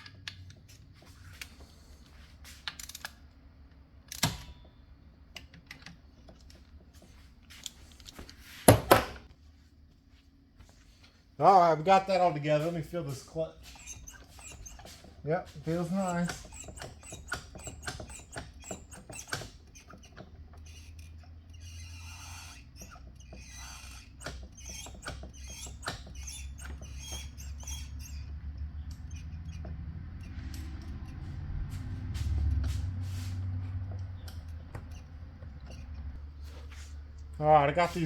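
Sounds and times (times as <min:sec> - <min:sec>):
metal parts clicking and scraping: 0:02.6 - 0:03.2.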